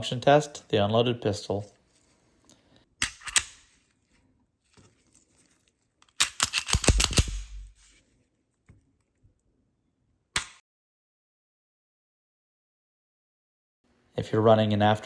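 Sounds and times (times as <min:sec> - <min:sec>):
pistol clacks: 0:03.0 - 0:03.7, 0:06.0 - 0:07.8
pistol metal clicks: 0:03.0 - 0:03.7, 0:06.0 - 0:07.8, 0:10.4 - 0:10.6.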